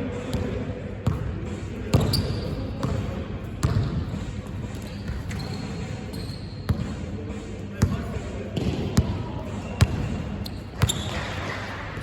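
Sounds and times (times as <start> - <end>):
basketball bouncing on court: 0.3 - 1.3, 1.9 - 5.5, 6.1 - 7.0, 9.8 - 11.3.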